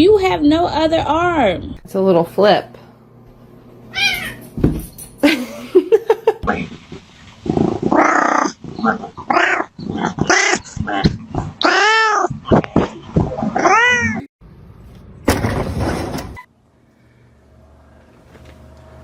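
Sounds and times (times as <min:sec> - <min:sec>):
cat meowing and yowling: 0:03.9 - 0:04.4, 0:13.6 - 0:14.3.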